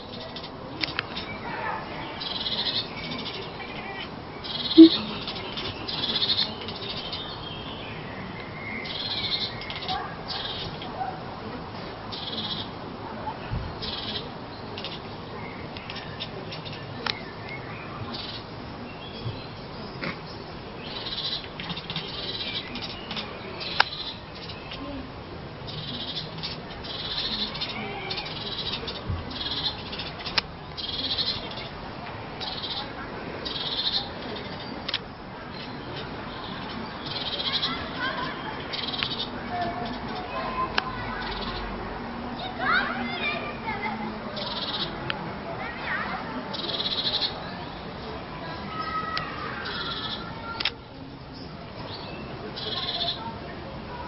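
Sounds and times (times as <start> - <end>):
cat chattering: 2.3 - 6.5
bird chirping: 4.4 - 10.8, 13.8 - 24.9, 25.7 - 31.7, 32.4 - 34.9, 35.5 - 40.3, 46.5 - 47.8
loud low call: 4.7 - 5.4
sharp click: 50.6 - 50.8.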